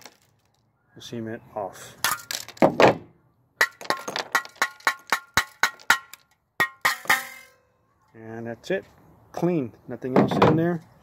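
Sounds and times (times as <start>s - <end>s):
cement breaking: 0.0s - 0.5s, 2.0s - 7.3s
hammer striking metal: 4.4s - 7.6s.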